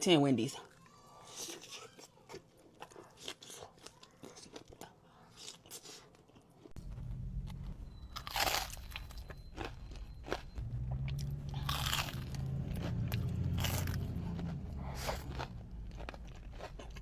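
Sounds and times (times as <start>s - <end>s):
crunchy chewing of crisp food: 0.6s - 6.8s, 7.6s - 17.0s
low steady hum: 6.8s - 17.0s.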